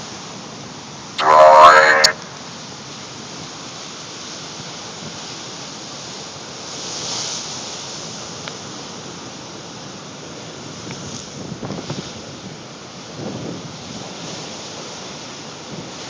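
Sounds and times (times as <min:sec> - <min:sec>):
ocean surf rushing: 0:01.2 - 0:03.2.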